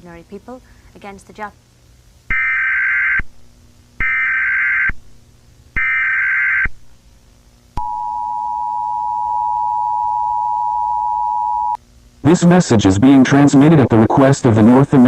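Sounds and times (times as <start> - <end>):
buzzy data-tone bursts: 4.0 - 4.9
two-tone alert signal: 7.8 - 11.8.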